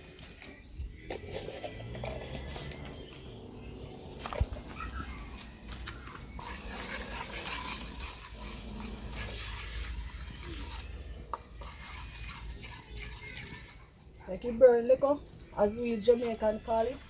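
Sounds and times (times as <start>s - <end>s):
curry powder sizzling in hot oil: 0.0s - 17.0s.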